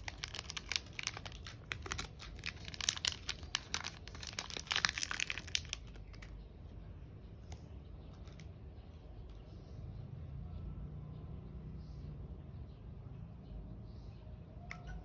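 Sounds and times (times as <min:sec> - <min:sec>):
wrapper crinkling and tearing: 0:00.0 - 0:06.3.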